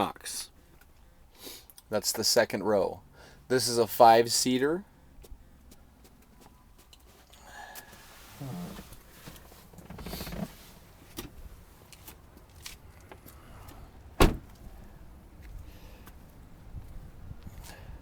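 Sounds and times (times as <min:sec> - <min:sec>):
car door shutting: 0:08.4 - 0:11.4, 0:14.2 - 0:14.6.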